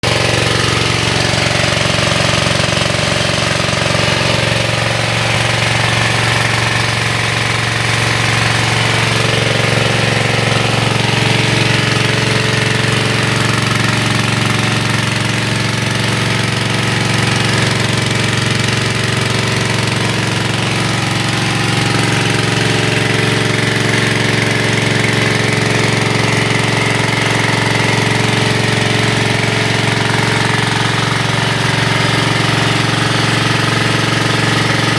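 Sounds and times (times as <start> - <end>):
small diesel engine running: 0.0 - 34.9.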